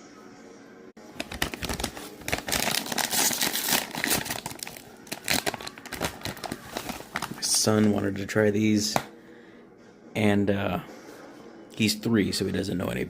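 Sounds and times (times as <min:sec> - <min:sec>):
chip bag crinkling: 0:01.0 - 0:08.0.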